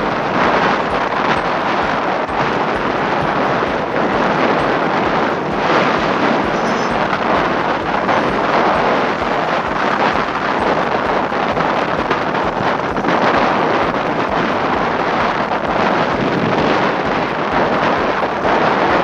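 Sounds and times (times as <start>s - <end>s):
wind buffeting microphone: 0.0s - 19.0s.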